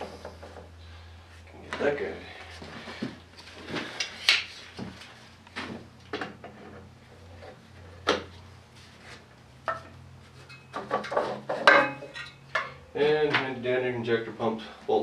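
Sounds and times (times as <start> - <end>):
tools knocking and clinking: 10.5 - 13.5.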